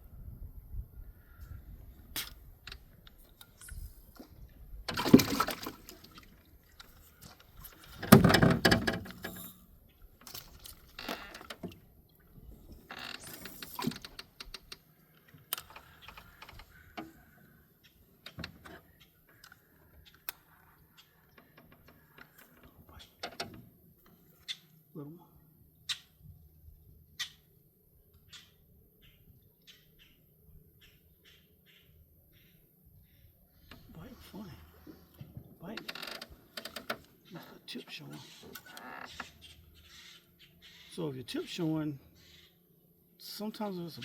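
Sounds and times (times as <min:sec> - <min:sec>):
water splashing: 0:05.0 - 0:08.0.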